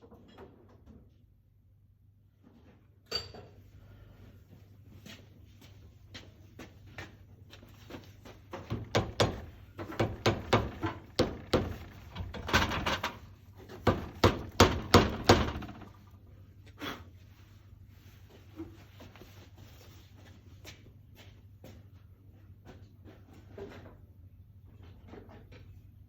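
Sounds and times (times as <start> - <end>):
hard objects knocking together: 8.6 - 16.0.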